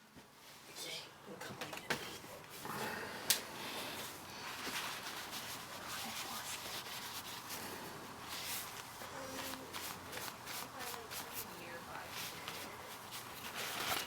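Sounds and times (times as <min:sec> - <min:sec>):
hands rubbing dog fur: 0:04.4 - 0:13.5.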